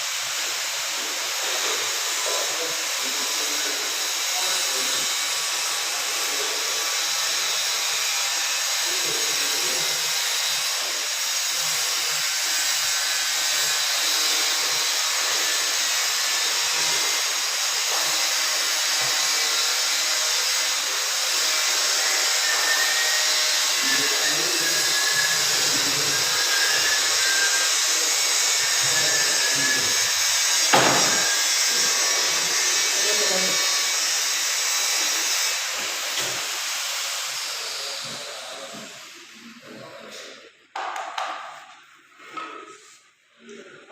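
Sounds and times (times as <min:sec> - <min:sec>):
small motorised tool whirring: 0:00.3 - 0:39.2
sharp knock: 0:30.7 - 0:31.2.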